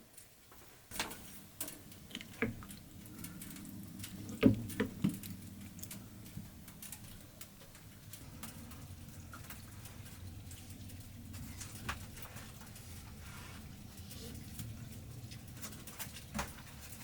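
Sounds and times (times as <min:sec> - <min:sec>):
faint steady low hum: 0:00.0 - 0:17.0
light clicks and knocks: 0:00.6 - 0:12.9.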